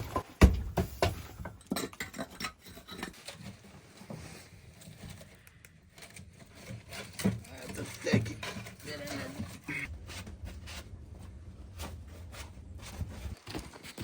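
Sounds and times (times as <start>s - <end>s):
short knocks and thumps: 0.0s - 1.6s.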